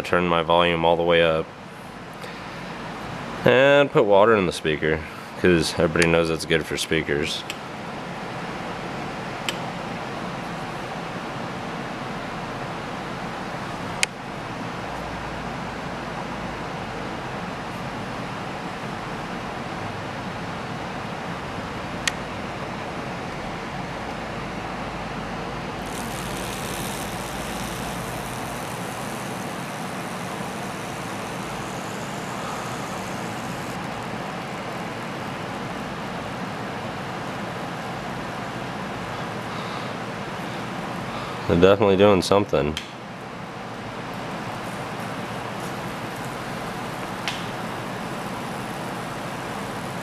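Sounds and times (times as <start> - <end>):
phone speaker buzzy low tone: 25.8 - 34.0, 45.5 - 50.0
sharp clicks: 45.7 - 50.0.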